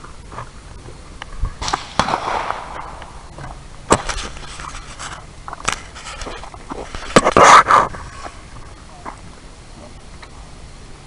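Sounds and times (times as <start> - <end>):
sharp gunshots: 1.6 - 3.3.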